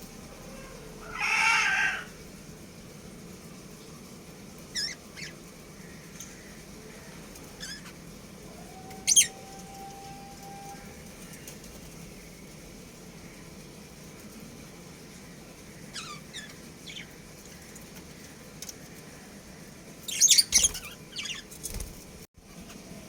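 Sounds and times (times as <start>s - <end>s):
budgerigars chirping: 20.1s - 21.5s.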